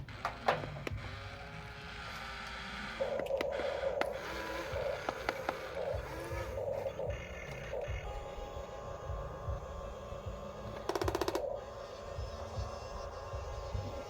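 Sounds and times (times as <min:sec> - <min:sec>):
small electric motors whirring: 0:00.0 - 0:14.0
steady buzz: 0:00.0 - 0:14.0.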